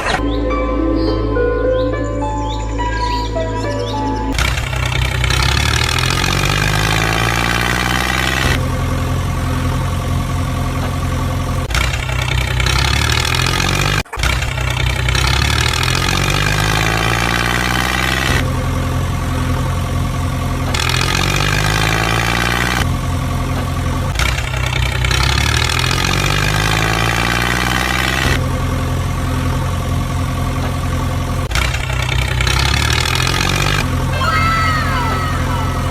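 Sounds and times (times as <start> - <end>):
heavy vehicle engine revving: 4.3 - 34.2
falling chirps: 34.2 - 35.9.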